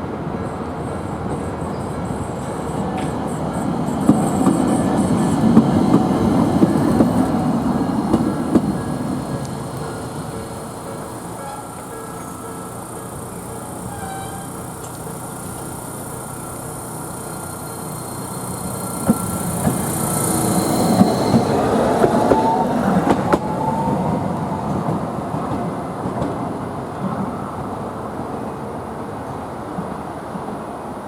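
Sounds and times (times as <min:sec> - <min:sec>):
streetcar passing: 0:00.0 - 0:31.0
wheel squeal: 0:00.8 - 0:24.2
wheel clacks over rail joints: 0:17.8 - 0:23.6.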